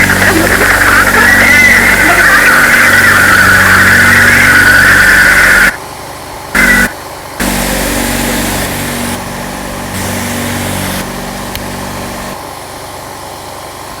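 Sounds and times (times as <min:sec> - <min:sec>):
electronically altered sneeze drone: 0:00.0 - 0:05.8, 0:06.6 - 0:12.4
click: 0:11.5 - 0:11.7.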